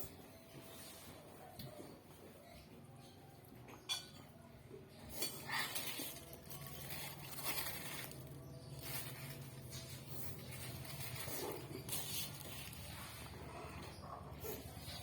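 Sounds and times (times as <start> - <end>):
people eating noodles: 0.0 - 15.0
tableware clink: 3.7 - 4.4.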